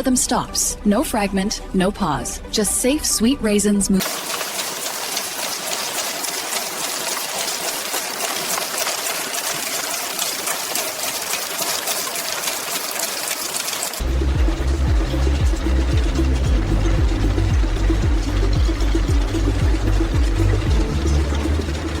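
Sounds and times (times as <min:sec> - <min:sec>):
music: 0:00.0 - 0:07.8, 0:14.0 - 0:22.0
machinery hissing and rattling: 0:04.0 - 0:22.0.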